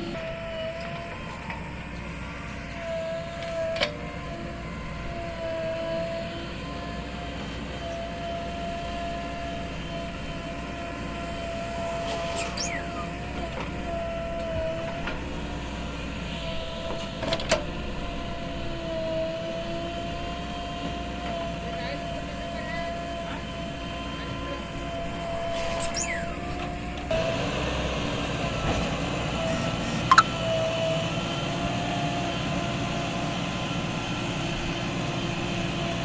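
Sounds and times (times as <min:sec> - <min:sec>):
whining tone: 0:00.0 - 0:17.2, 0:29.4 - 0:31.0
diesel engine running: 0:00.0 - 0:36.0.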